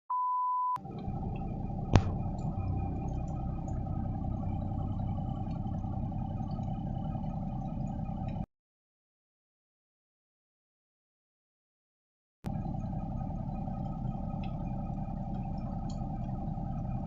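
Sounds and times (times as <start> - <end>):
truck engine idling: 0.8 - 8.5, 12.5 - 17.0.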